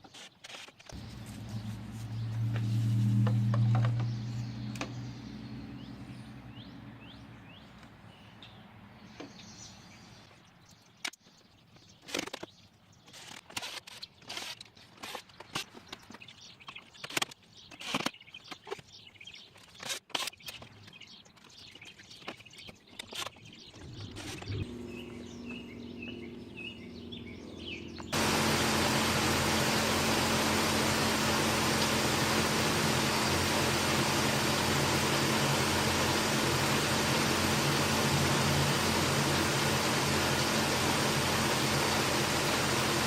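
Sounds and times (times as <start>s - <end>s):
small birds chirping: 0.0s - 43.0s
low hum: 1.0s - 7.4s, 23.7s - 43.0s
plastic parts and tools clicking: 11.0s - 18.9s.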